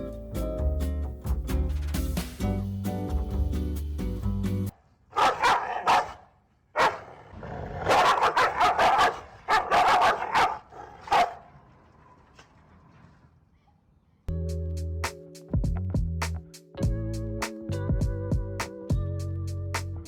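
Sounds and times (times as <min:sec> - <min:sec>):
animal barking: 0:05.1 - 0:11.6.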